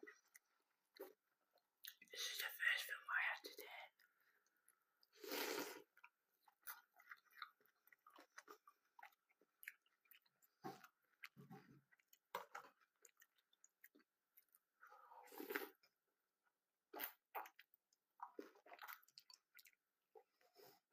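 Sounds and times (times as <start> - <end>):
cornflakes being chewed: 4.0 - 15.9, 16.9 - 20.4.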